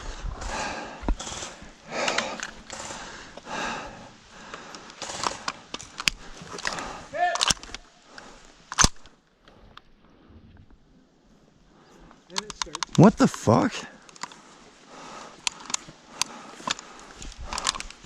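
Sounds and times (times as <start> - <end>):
sharp clicks and knocks: 12.3 - 13.5, 15.4 - 18.0
sharp crack: 12.3 - 14.4.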